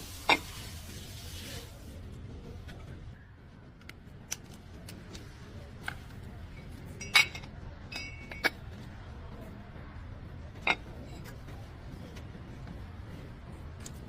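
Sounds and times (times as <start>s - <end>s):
metal tools clinking: 6.5s - 8.6s
metallic ring: 6.5s - 8.6s.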